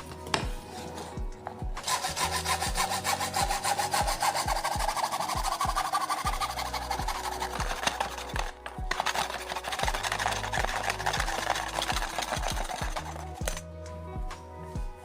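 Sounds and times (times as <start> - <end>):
music with kick-drum beat: 0.0 - 9.0, 9.8 - 15.0
tool rasping scrape: 1.8 - 13.7.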